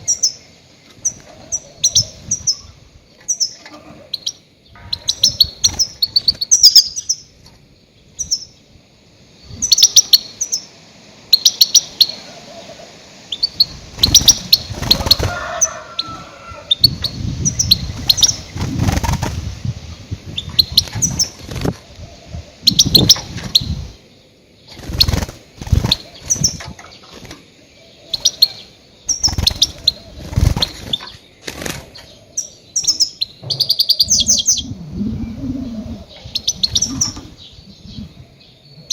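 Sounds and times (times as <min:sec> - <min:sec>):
goldfinch twittering chirps: 0:09.5 - 0:10.7, 0:27.9 - 0:31.3.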